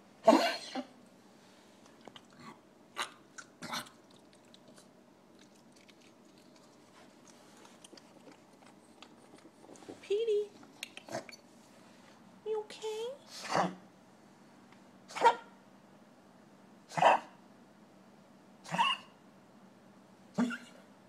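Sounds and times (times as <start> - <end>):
dog coughing: 0.2 - 1.0, 18.7 - 19.1, 20.4 - 20.8
wet mouth smacking and licking: 1.8 - 2.4, 3.0 - 9.8, 10.6 - 11.4.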